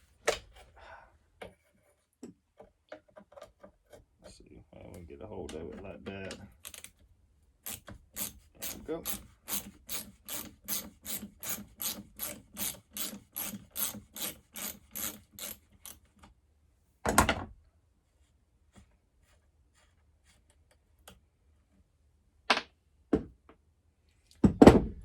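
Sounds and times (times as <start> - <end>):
ratchet wrench clicking: 7.7 - 16.0
loud thump: 24.4 - 25.0.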